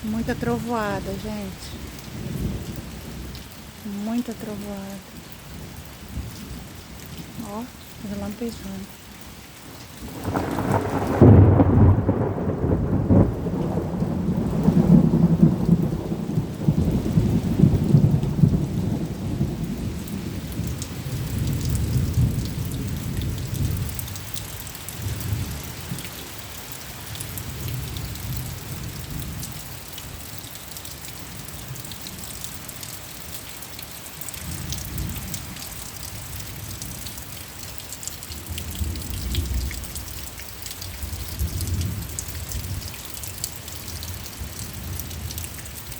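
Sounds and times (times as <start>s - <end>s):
heavy rain: 0.0s - 45.9s
thunder crack and rumble: 10.1s - 24.2s, 38.5s - 40.1s.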